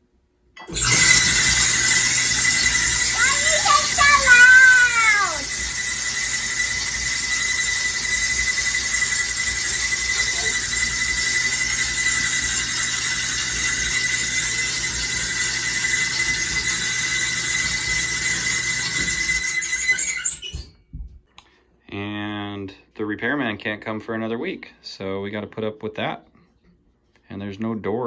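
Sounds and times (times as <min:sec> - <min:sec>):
clothes dryer humming: 0:00.6 - 0:20.7
clothes dryer squealing: 0:00.6 - 0:20.8.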